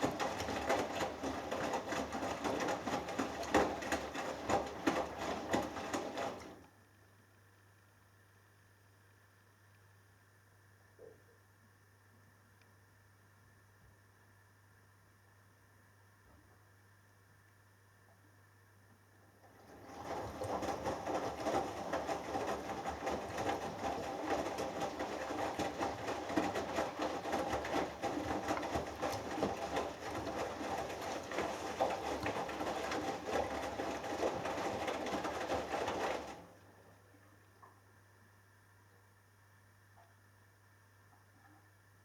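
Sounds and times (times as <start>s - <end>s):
laundry sloshing in water: 0.0s - 6.6s, 19.5s - 36.8s.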